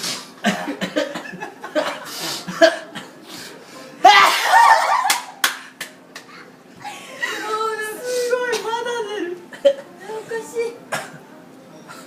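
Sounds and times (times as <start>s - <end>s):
loud sneeze: 4.1s - 4.8s.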